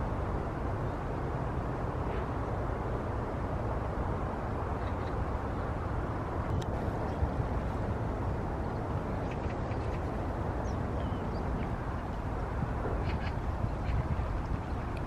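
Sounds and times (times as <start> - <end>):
steady low rumble: 0.0 - 15.0
bird calls: 8.7 - 11.7.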